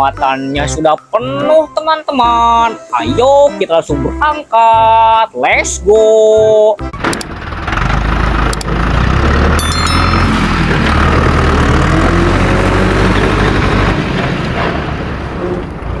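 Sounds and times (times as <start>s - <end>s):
heavy truck engine pulling away: 6.9s - 16.0s
high metallic ring: 9.6s - 10.5s.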